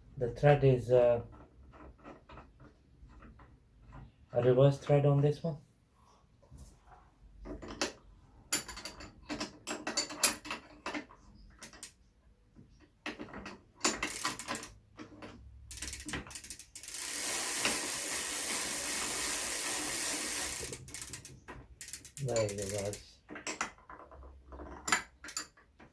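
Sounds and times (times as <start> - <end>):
ratcheting clicks: 13.9 - 14.8, 15.7 - 23.1.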